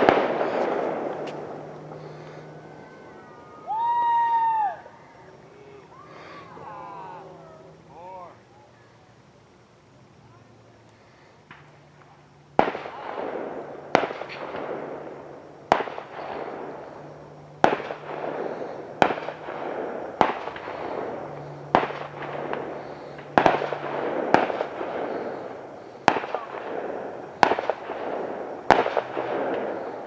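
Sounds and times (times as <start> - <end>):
fireworks bangs: 0.0 - 7.3, 11.4 - 30.0
fireworks crackling: 0.0 - 30.0.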